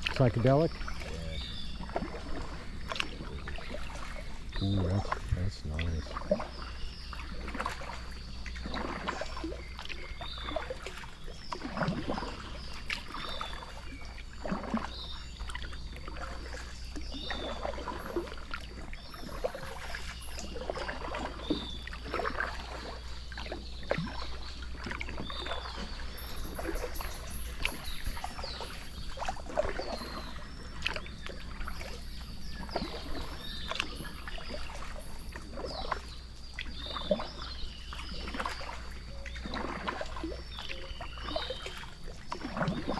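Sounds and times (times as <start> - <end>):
water splashing and knocking: 8.6 - 12.4, 39.4 - 40.4.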